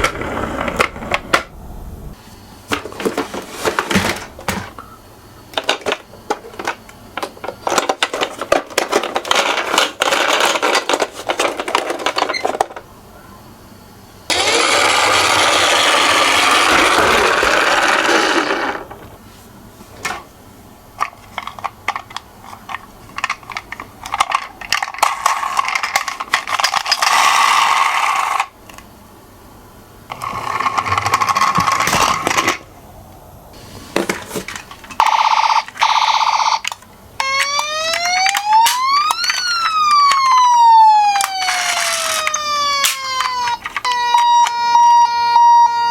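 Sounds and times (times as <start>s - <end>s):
toy cars rolling rush: 0.0s - 1.4s, 5.6s - 12.8s, 14.3s - 19.2s, 21.0s - 28.6s, 30.1s - 32.7s, 33.9s - 45.9s
toy cars clicking and rattling: 5.6s - 12.8s, 14.3s - 19.0s, 21.0s - 28.8s, 30.1s - 32.7s, 34.0s - 45.0s.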